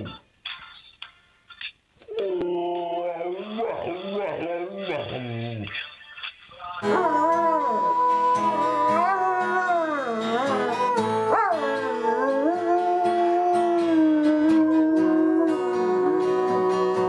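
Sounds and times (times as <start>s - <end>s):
dog howling: 6.8s - 17.0s
guitar music: 6.8s - 17.0s.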